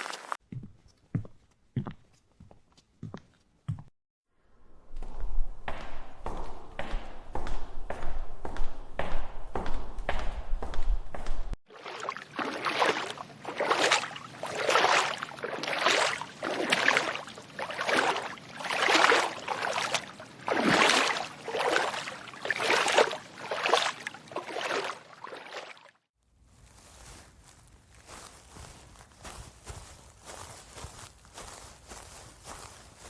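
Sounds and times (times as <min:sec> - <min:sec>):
footsteps wading through water: 0:00.0 - 0:00.4, 0:11.7 - 0:33.0.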